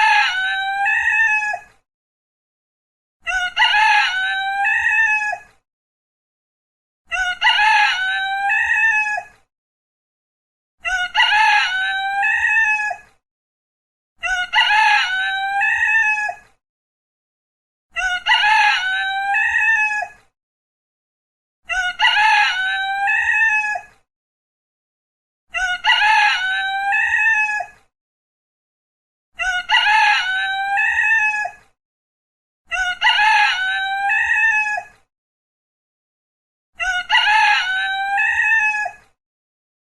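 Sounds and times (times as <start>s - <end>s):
rooster crowing: 3.3s - 5.4s, 18.1s - 20.0s, 21.7s - 23.9s, 25.6s - 27.7s, 32.8s - 34.9s, 36.9s - 38.9s.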